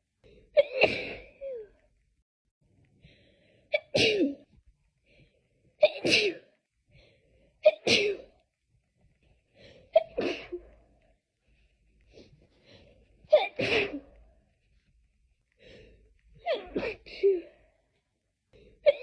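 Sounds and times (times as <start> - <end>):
person sneezing: 13.3 - 14.1.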